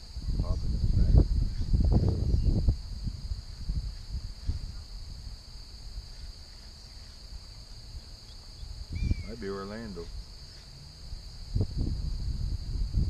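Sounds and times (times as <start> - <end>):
low rumbling on microphone: 0.0 - 6.2, 7.8 - 10.3, 11.0 - 13.0
high-pitched insect chorus: 0.0 - 13.0.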